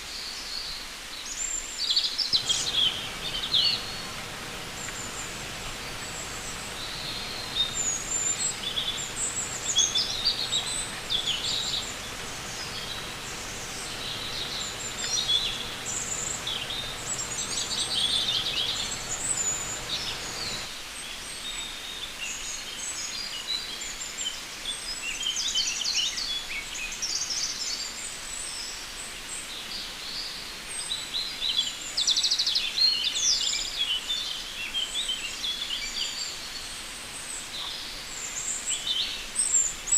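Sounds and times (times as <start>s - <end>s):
low background hum: 2.4s - 20.7s.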